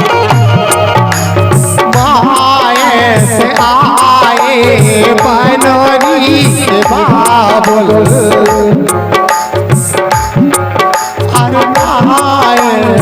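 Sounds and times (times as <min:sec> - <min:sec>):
hand drum bass strokes: 0:00.0 - 0:04.0.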